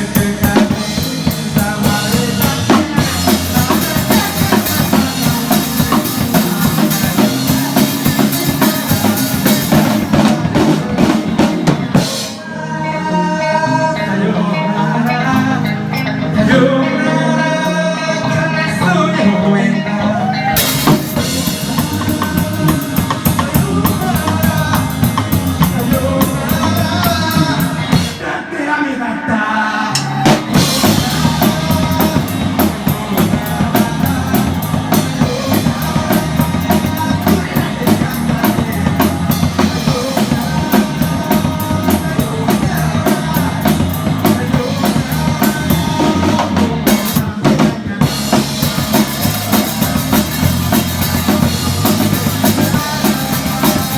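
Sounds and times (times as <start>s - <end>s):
rock band playing: 0.0s - 28.4s, 29.8s - 53.9s
fast cymbal hits: 0.9s - 10.4s, 48.0s - 53.9s.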